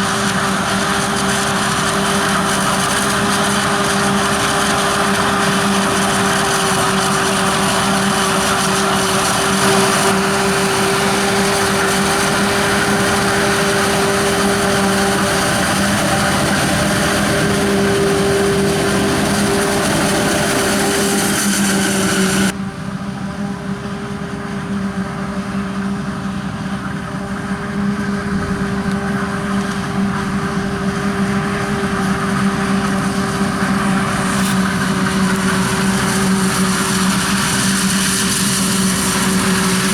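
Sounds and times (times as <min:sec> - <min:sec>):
farm machinery engines humming: 0:00.0 - 0:39.9
rushing hiss: 0:06.2 - 0:22.5.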